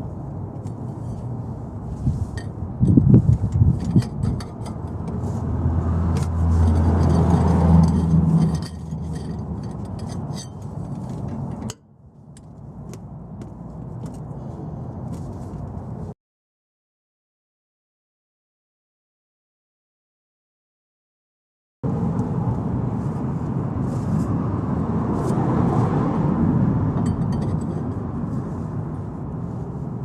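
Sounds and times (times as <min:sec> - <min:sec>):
hand tools clicking and clinking: 0:06.2 - 0:11.8.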